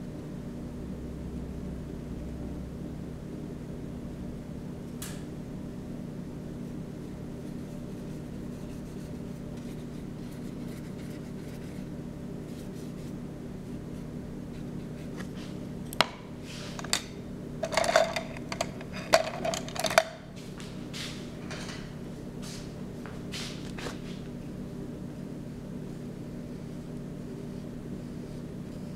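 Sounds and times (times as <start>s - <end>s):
steady low hum: 0.0s - 28.9s
paintbrush strokes on paper: 7.4s - 15.6s.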